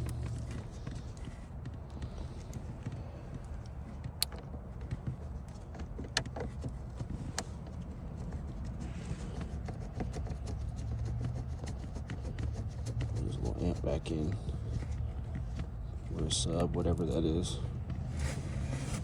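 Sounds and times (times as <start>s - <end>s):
car engine idling: 0.0s - 4.3s.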